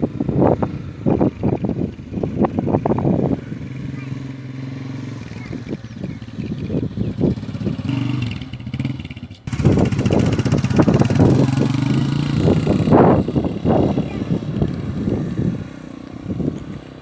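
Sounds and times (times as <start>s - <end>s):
motorcycle engine running: 0.0s - 17.0s
rough wind noise: 0.0s - 17.0s.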